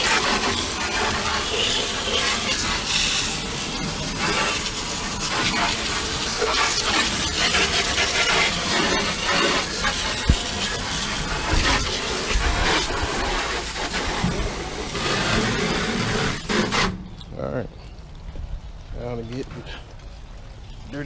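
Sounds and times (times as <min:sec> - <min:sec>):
hose spraying water into boat: 0:00.0 - 0:17.0.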